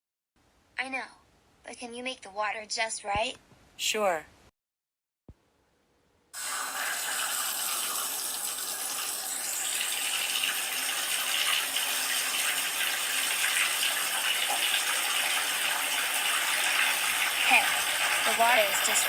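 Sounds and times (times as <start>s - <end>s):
water running from tap into tub: 6.4s - 19.0s.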